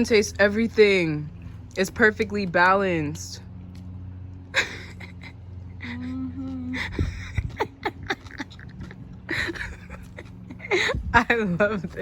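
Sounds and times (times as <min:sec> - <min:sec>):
steady low hum: 0:00.0 - 0:12.0
woman saying mmm: 0:06.0 - 0:06.8.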